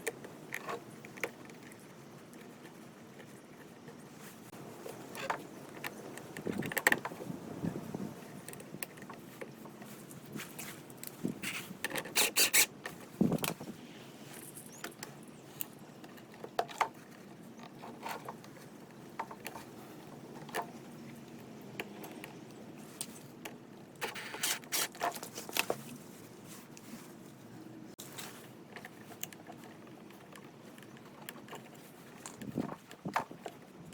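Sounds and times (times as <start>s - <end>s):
hand tools clicking and scraping: 8.2s - 25.9s.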